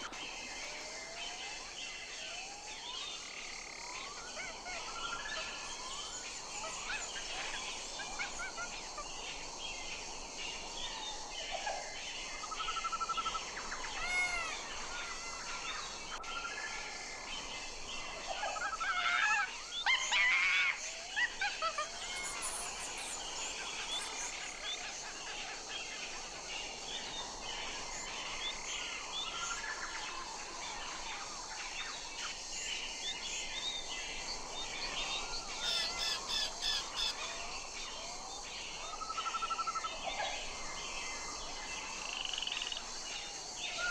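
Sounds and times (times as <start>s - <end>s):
steady hiss: 0.0s - 2.2s, 21.3s - 39.3s.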